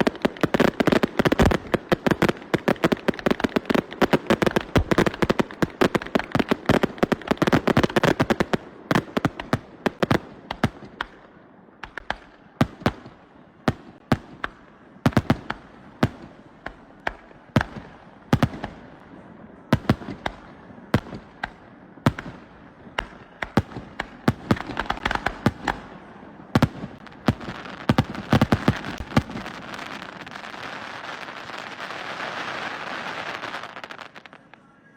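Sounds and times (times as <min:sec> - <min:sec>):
fireworks bangs and cracks: 0:00.0 - 0:11.2, 0:11.8 - 0:34.6.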